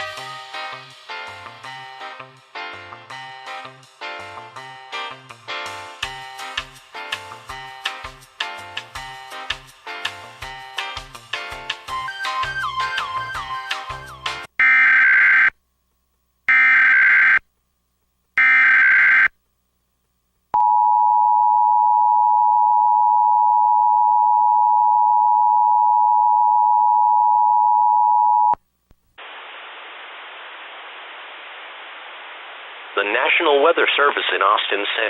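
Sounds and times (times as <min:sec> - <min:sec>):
steady hiss: 0:29.2 - 0:35.0.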